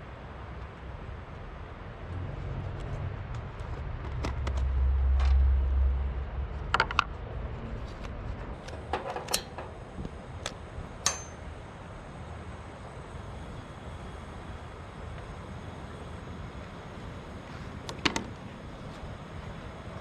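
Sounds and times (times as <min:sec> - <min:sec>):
low rumble: 0:01.6 - 0:11.0.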